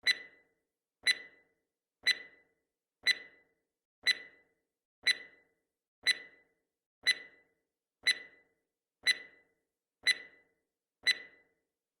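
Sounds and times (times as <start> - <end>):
timer ticks with ringing tone: 0.0 - 11.7.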